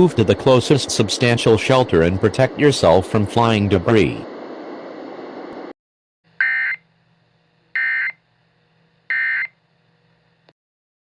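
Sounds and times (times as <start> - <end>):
digital data tone bursts: 7.8 - 8.2.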